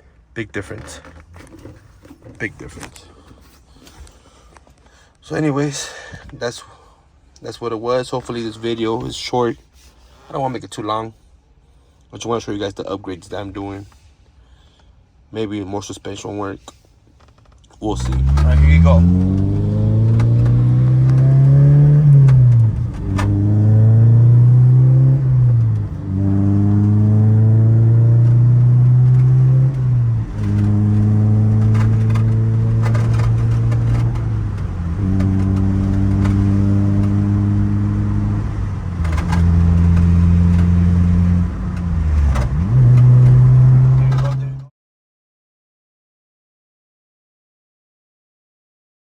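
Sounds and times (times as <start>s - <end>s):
car engine accelerating through gears: 17.9s - 44.7s.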